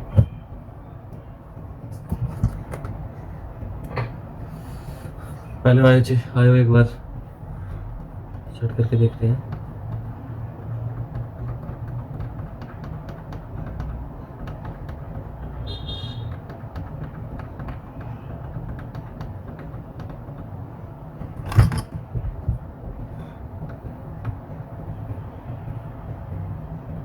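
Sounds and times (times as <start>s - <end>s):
street traffic rumbling: 0.0s - 27.0s
vehicle horn toot: 15.6s - 16.3s.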